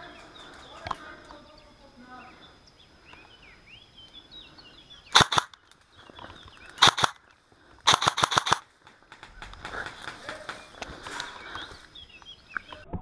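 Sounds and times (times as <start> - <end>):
airsoft gun shots: 5.1 - 5.6, 6.8 - 7.2, 7.9 - 8.7.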